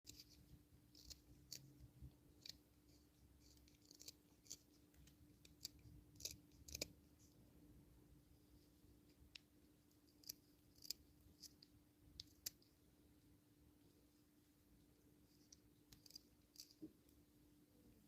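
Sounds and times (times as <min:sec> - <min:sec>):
knife carving wood: 0:00.1 - 0:07.4, 0:09.1 - 0:12.7, 0:15.2 - 0:17.1
faint steady hum: 0:00.1 - 0:18.0.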